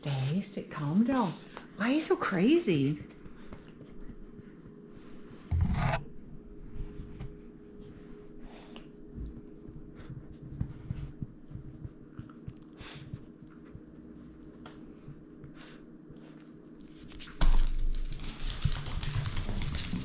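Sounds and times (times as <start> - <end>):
dog breathy puffs: 1.1 - 1.8, 7.9 - 16.6
dog scuffling: 16.8 - 20.0.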